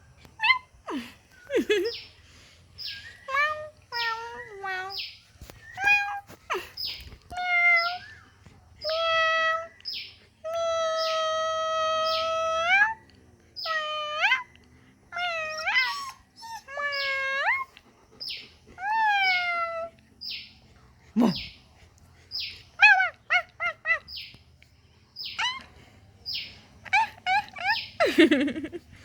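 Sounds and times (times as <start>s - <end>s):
dog whining: 13.6s - 14.5s, 15.1s - 20.0s, 22.4s - 24.2s, 25.3s - 25.8s, 26.8s - 28.8s
dog yipping: 15.2s - 19.9s, 22.4s - 24.3s, 25.2s - 25.7s, 26.8s - 28.7s.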